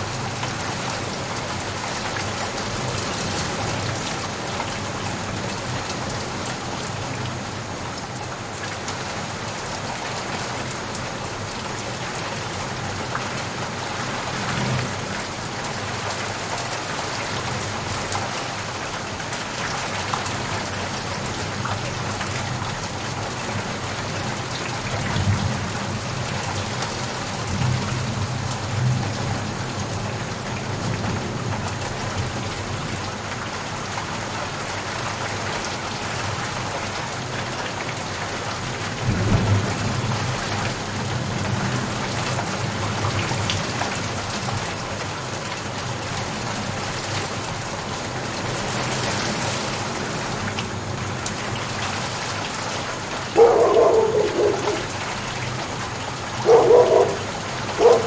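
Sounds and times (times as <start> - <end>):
steady rain falling: 0.0 - 58.0
thunder rumbling: 53.3 - 58.0.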